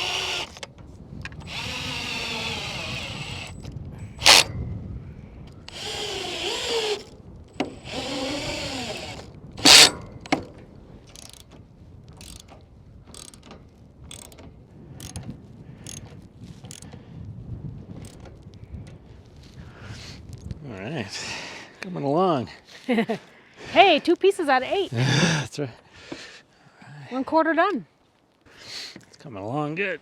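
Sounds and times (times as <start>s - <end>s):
cordless drill driving screws: 0.0s - 0.7s, 1.3s - 4.5s, 5.6s - 10.4s.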